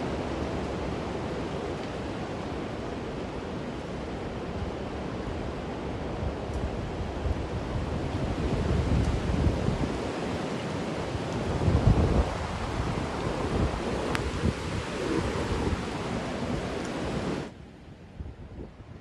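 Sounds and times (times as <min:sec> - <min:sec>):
wind gusting on microphone: 0:04.3 - 0:19.0.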